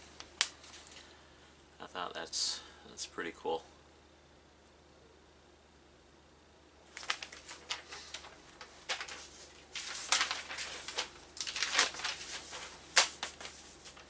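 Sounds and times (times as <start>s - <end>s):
paper rustling and crinkling: 6.9s - 14.0s.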